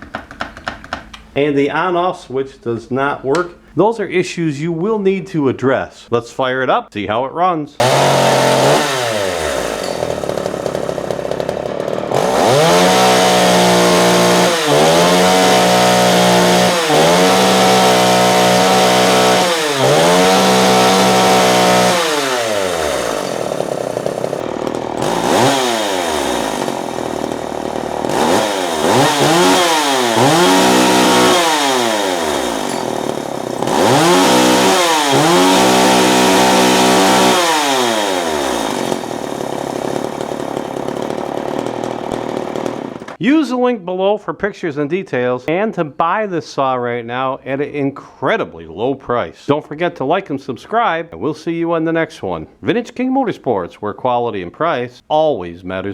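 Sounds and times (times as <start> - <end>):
chainsaw idling and revving: 7.8 - 43.2.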